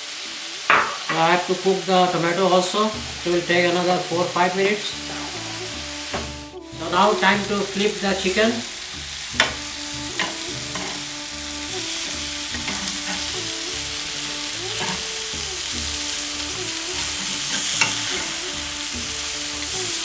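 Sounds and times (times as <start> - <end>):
chicken sizzling in hot oil: 0.0 - 20.0
utensil clicking against pan: 9.3 - 11.1, 12.5 - 13.4.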